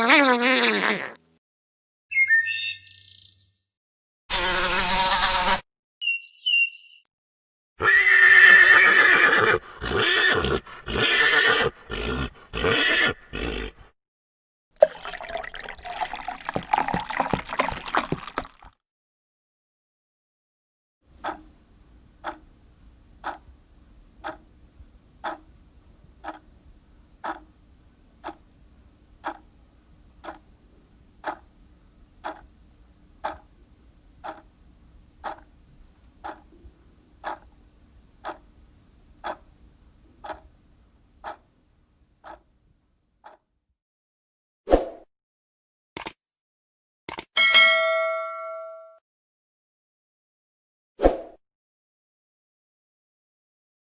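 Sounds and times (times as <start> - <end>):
steady ticking: 29.2 - 29.5, 30.2 - 30.5, 31.2 - 31.5, 35.2 - 35.5, 36.2 - 36.5.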